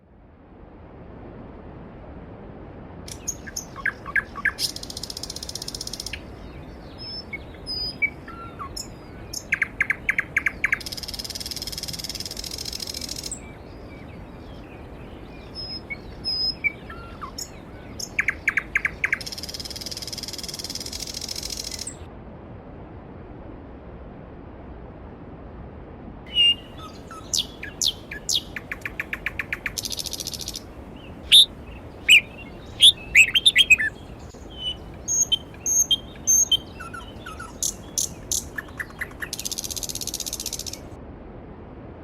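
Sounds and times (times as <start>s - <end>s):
songbird singing: 3.1s - 22.0s, 26.3s - 40.9s
stream rushing: 26.3s - 40.9s.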